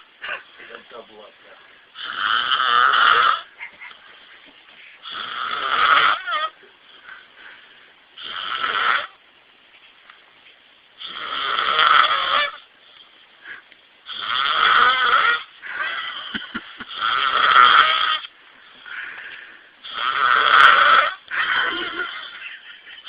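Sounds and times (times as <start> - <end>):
quiet breaths: 0.0 - 2.2, 3.4 - 5.6, 6.5 - 8.4, 12.6 - 14.3, 18.3 - 20.2
man snoring heavily: 2.0 - 3.5, 5.0 - 6.5, 8.2 - 9.2, 11.0 - 12.6, 14.1 - 19.0, 19.8 - 22.4.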